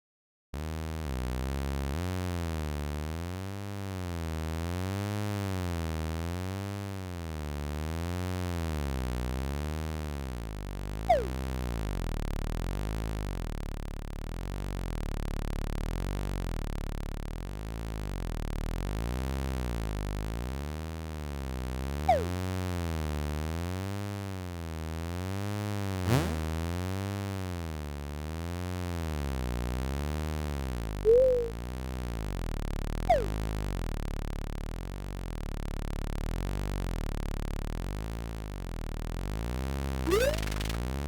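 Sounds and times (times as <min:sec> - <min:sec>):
synthesized cartoon engine buzzing: 0:11.1 - 0:11.6, 0:26.0 - 0:26.8, 0:31.1 - 0:31.6, 0:33.1 - 0:33.5, 0:40.1 - 0:40.8
whistle falling in pitch: 0:31.1 - 0:31.6.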